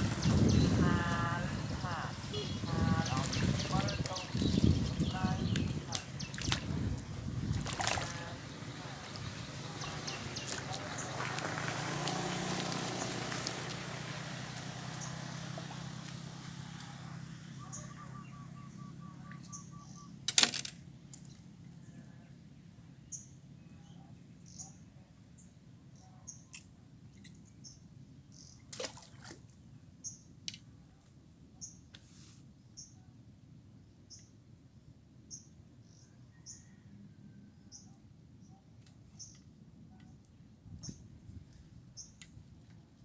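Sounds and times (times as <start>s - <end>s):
small birds chirping: 0.0s - 20.3s, 37.7s - 43.0s.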